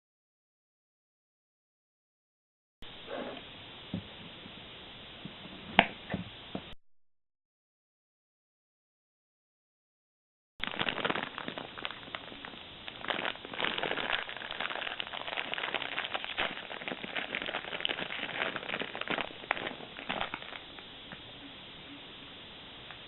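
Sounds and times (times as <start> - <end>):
plastic wrapper crinkling: 10.6 - 20.9.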